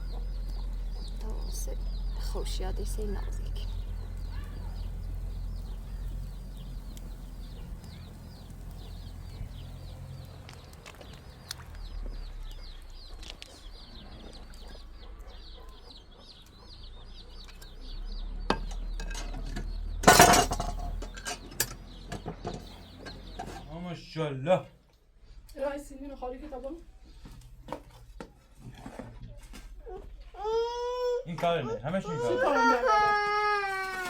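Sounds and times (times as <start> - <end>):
birds chirping: 0.0 - 33.8
loud clatter: 18.6 - 23.7.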